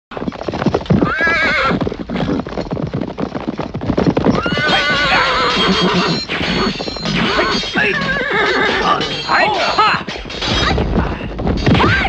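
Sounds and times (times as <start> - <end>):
fast clatter of knocks: 0.1 - 9.3, 10.0 - 12.0
horse whinnying: 0.9 - 2.6, 4.1 - 9.4.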